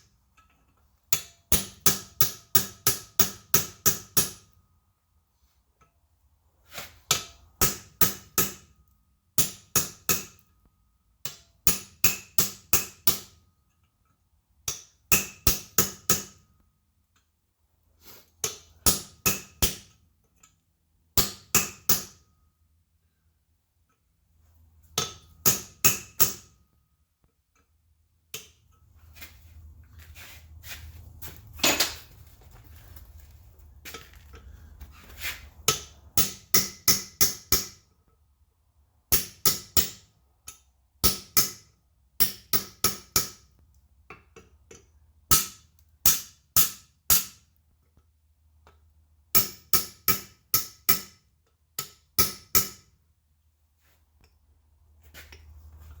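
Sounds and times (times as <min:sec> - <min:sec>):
hammer striking iron on anvil: 0:01.1 - 0:04.6, 0:07.1 - 0:08.8, 0:09.4 - 0:10.5, 0:11.2 - 0:13.4, 0:14.7 - 0:16.6, 0:18.4 - 0:20.0, 0:21.2 - 0:22.4, 0:25.0 - 0:26.7, 0:35.7 - 0:37.9, 0:39.1 - 0:43.6, 0:44.4 - 0:47.5, 0:49.3 - 0:51.2, 0:51.8 - 0:52.9.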